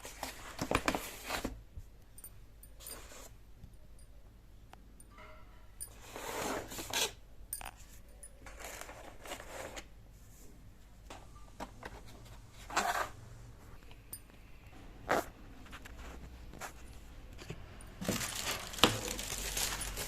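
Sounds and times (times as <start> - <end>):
packaging rustling and scraping: 0.0 - 1.6, 5.9 - 9.9, 11.9 - 13.2, 15.1 - 20.0.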